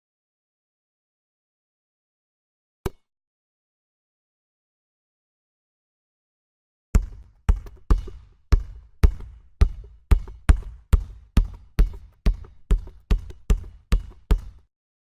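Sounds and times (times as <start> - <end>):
basketball bouncing on hard court: 7.0 - 14.7.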